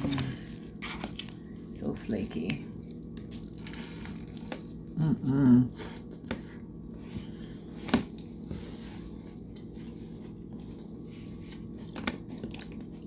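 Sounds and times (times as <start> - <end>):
person eating flaky food: 2.6 - 13.0.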